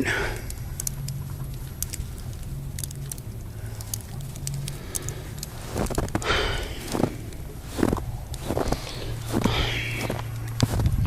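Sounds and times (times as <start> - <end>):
meltwater dripping: 0.0 - 10.7
low steady hum: 0.0 - 11.0
scuffing noise: 5.5 - 11.0.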